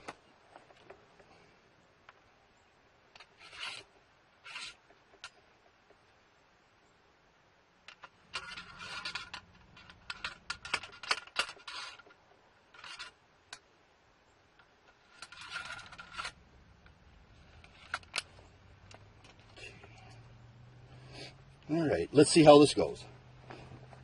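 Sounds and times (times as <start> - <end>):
ramrod scraping in rifle barrel: 3.2 - 5.4, 7.9 - 13.6, 14.6 - 21.7.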